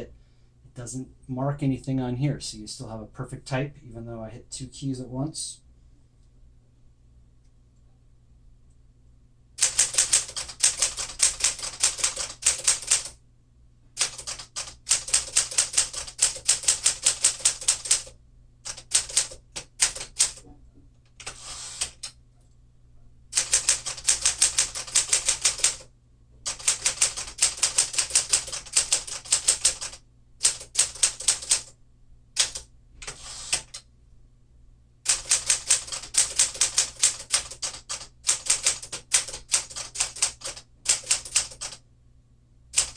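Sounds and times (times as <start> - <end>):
manual typewriter typing: 9.6 - 13.2, 14.0 - 20.4, 21.2 - 22.1, 23.4 - 25.9, 26.5 - 31.7, 32.4 - 33.8, 35.1 - 41.8.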